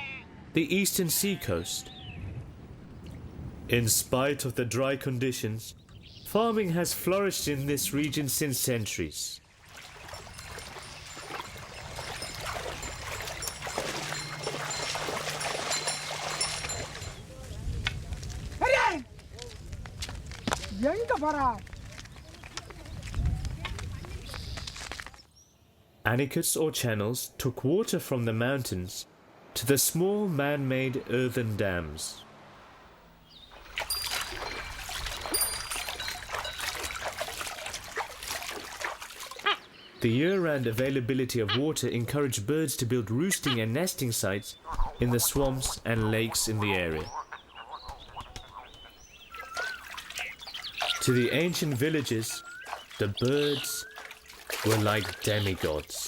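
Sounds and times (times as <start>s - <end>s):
water running and splashing: 9.4s - 17.5s, 33.4s - 39.8s, 44.7s - 56.0s.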